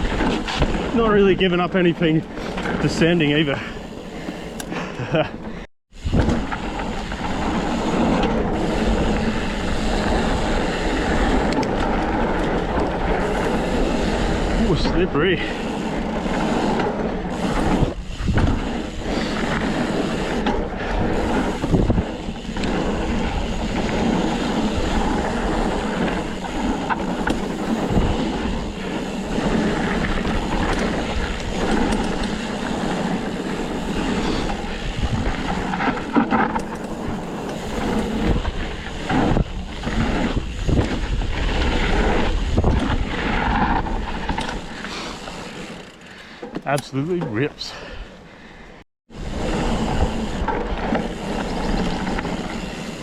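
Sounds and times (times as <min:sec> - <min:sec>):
bike knocks and rattles: 0:00.0 - 0:03.6, 0:06.0 - 0:47.5
bike tyres rolling over dirt and rocks: 0:00.0 - 0:48.4, 0:49.1 - 0:53.0
wind on microphone: 0:17.3 - 0:20.2, 0:20.8 - 0:26.4, 0:27.2 - 0:32.2, 0:33.5 - 0:35.7, 0:37.0 - 0:44.4.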